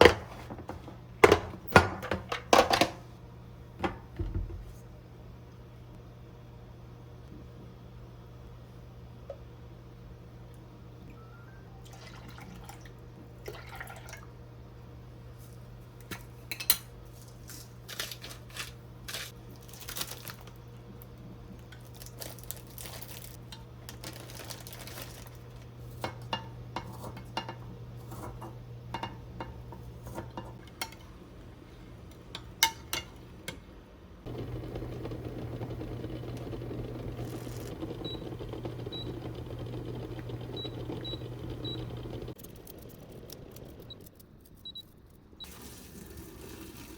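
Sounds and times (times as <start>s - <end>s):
appliance hum: 0.0s - 46.9s.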